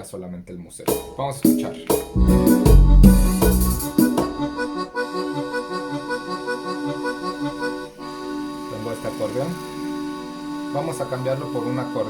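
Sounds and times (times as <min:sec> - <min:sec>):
keyboard accordion chords: 0:01.0 - 0:12.0
bouncing bass line: 0:01.6 - 0:04.7.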